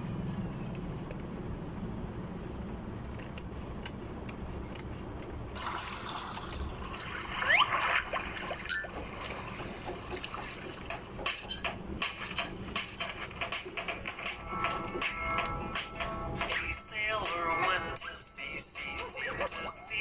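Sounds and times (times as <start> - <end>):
low steady hum: 0.0 - 20.0
scissors cutting paper: 3.1 - 7.2, 11.2 - 17.4.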